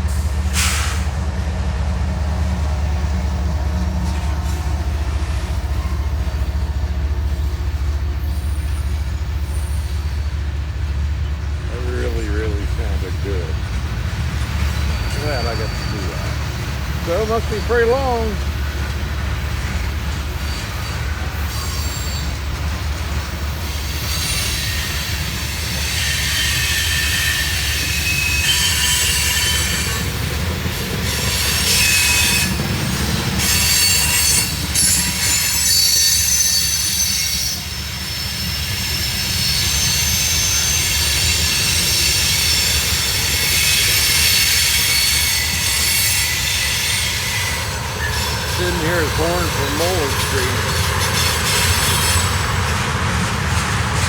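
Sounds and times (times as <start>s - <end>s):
train cars rumbling: 0.0s - 54.0s
steel wheels squealing: 3.1s - 10.6s, 11.2s - 18.5s, 19.9s - 22.8s, 23.4s - 52.6s.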